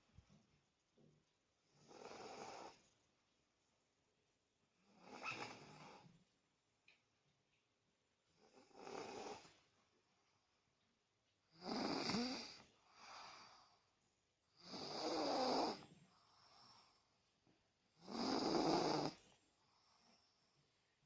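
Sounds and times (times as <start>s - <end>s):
child snoring loudly: 11.6s - 12.6s, 14.6s - 15.8s, 18.0s - 19.2s
soft breath out: 12.6s - 14.0s.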